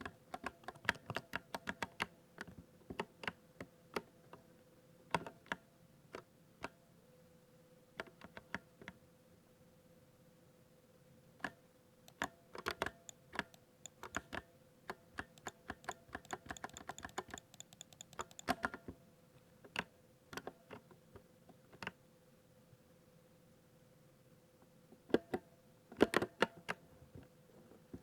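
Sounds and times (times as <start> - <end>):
mechanical keyboard typing: 12.1 - 18.7.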